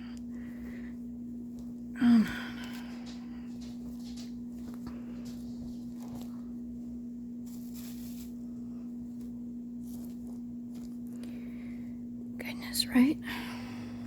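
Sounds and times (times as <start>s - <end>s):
steady low hum: 0.0s - 14.0s
cloth doll rustling: 2.2s - 6.7s.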